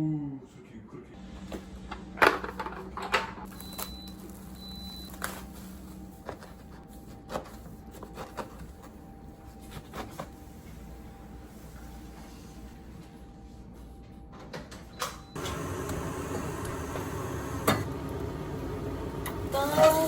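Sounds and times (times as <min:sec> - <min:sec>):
steady low hum: 0:15.3 - 0:20.0.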